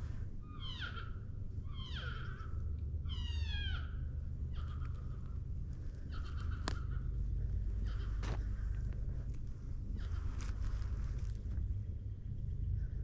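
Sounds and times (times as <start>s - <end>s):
steady low rumble: 0.0s - 13.0s
descending mewing calls: 0.5s - 8.6s.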